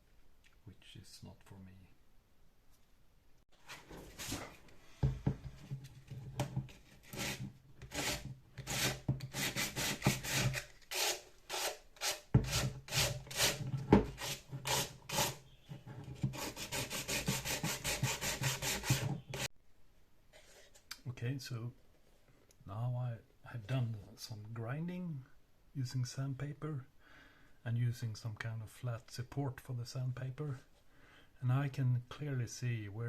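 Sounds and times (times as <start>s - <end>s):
sandpaper rasping on resin: 7.1s - 15.4s, 16.4s - 19.5s.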